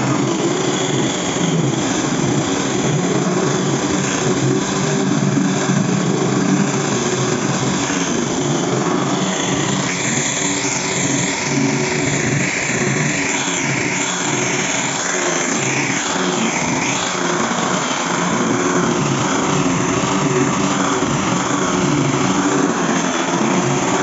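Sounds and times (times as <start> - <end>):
power grinder grinding wood: 0.0 - 24.0.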